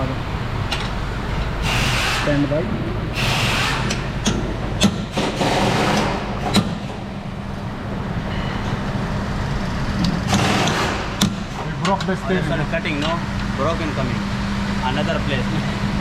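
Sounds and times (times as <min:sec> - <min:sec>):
low mechanical hum: 0:00.0 - 0:16.0
hiss: 0:01.6 - 0:02.3
sharp clicks and knocks: 0:03.8 - 0:07.0, 0:10.0 - 0:12.2.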